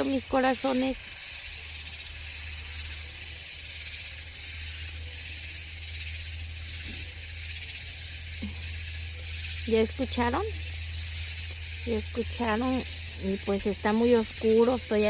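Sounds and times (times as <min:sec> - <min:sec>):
cicadas buzzing: 0:00.0 - 0:15.0
steady low hum: 0:00.0 - 0:15.0.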